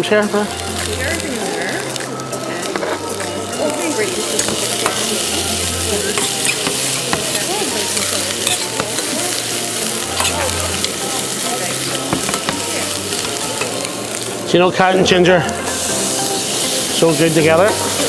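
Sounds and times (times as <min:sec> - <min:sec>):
food sizzling in oil: 0:00.0 - 0:18.0
utensil scraping a pan: 0:02.5 - 0:13.9.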